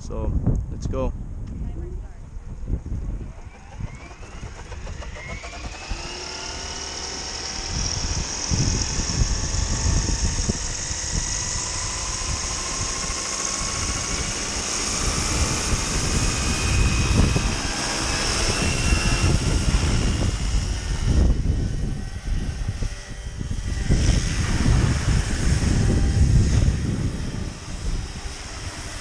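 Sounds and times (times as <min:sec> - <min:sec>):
wind buffeting microphone: 0:00.0 - 0:29.0
rc helicopter motor whine: 0:03.0 - 0:29.0.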